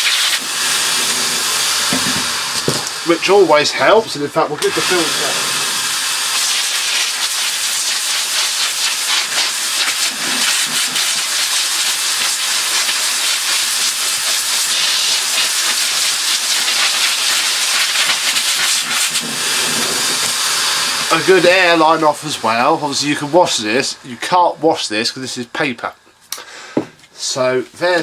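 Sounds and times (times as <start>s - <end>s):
compressed air hissing: 0.0s - 24.4s.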